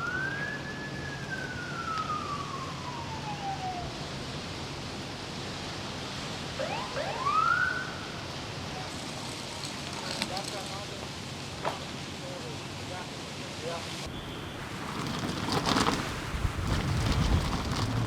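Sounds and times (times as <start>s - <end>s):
emergency siren wailing: 0.0s - 4.4s, 6.5s - 8.4s
steady background noise: 0.0s - 18.0s.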